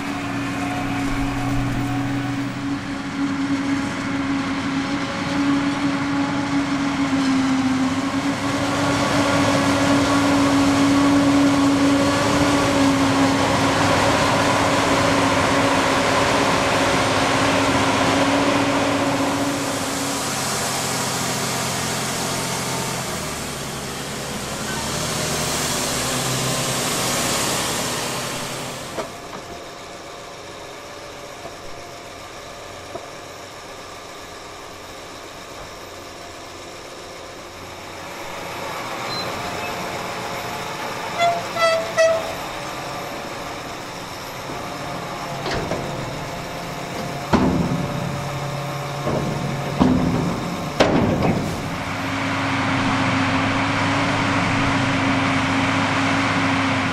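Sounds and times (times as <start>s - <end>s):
diesel farm machinery running: 0.0s - 56.9s
horn toots: 41.1s - 42.6s.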